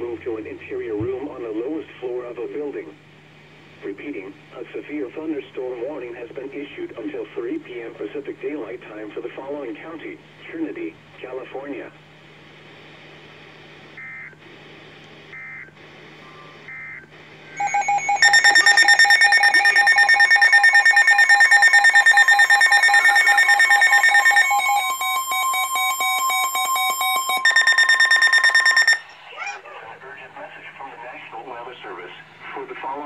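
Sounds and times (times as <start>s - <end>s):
faint data chirps: 16.2s - 29.2s
pulsing electronic alarm tone: 17.6s - 29.2s.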